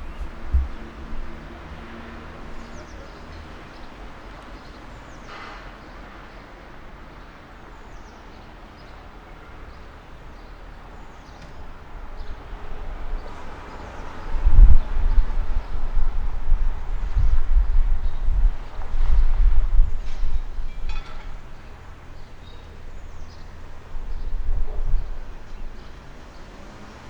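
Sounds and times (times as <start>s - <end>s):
small birds chirping: 0.0s - 5.4s
distant traffic hum: 0.0s - 27.0s.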